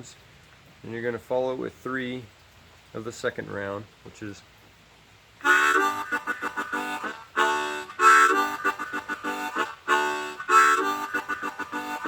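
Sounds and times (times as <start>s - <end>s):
harmonica chord rhythm: 5.4s - 12.0s.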